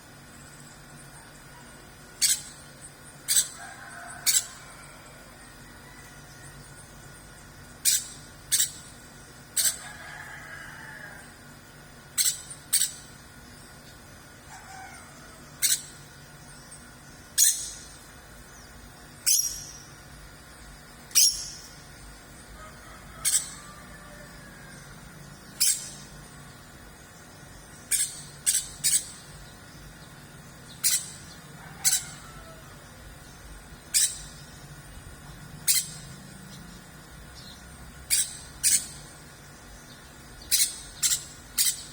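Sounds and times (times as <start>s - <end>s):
sharp high-pitched bursts: 21.1s - 21.8s.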